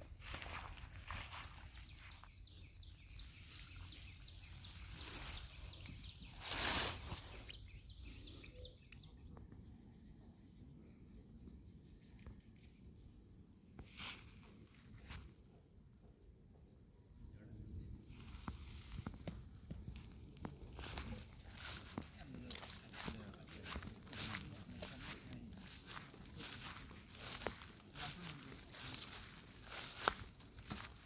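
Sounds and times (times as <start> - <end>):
insects chirping: 0.0 - 12.1.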